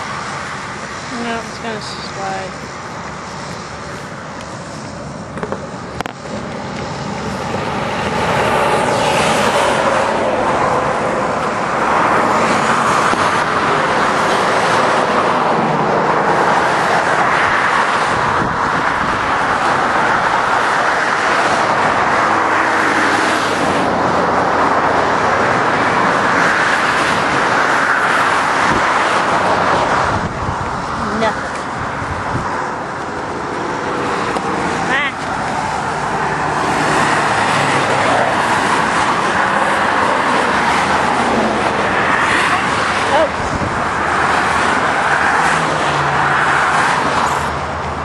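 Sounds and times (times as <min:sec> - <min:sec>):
car driven hard: 0:00.0 - 0:48.0.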